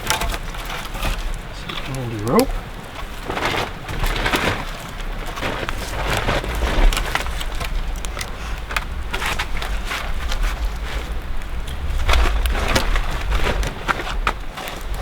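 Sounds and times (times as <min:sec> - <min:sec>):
wood crackling and knocking: 0:00.0 - 0:15.0
steady low rumble: 0:06.4 - 0:15.0.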